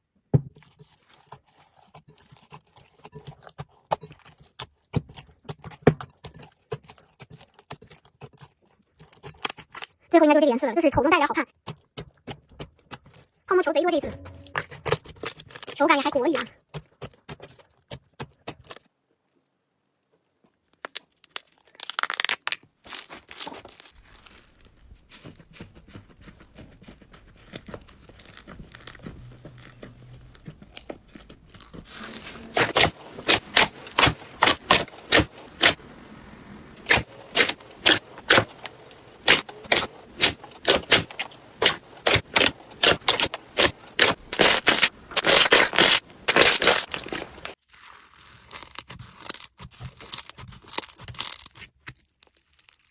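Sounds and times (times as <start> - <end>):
slime crackling and popping: 21.2 - 24.8, 27.5 - 47.6.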